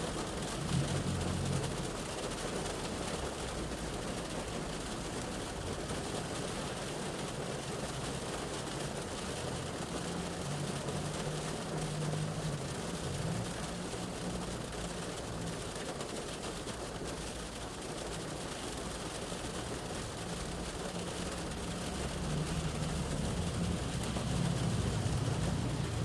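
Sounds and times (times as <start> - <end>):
rain on car roof: 0.0 - 26.0
passing vehicle engine hum: 20.9 - 26.0.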